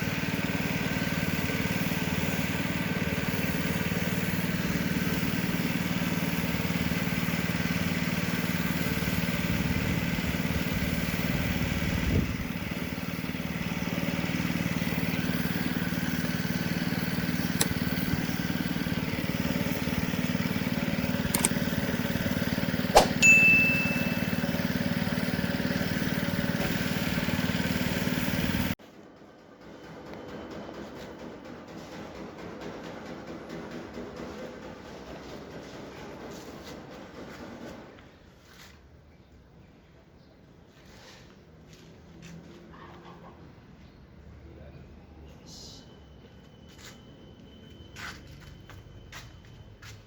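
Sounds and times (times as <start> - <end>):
sharp clicks: 21.2 - 21.7, 23.0 - 23.2
metallic clink ringing: 23.0 - 24.8.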